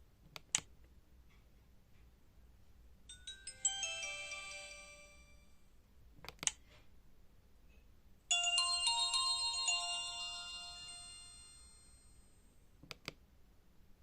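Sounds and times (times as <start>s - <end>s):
chime-like phone ringtone: 3.1s - 5.6s, 8.3s - 12.2s.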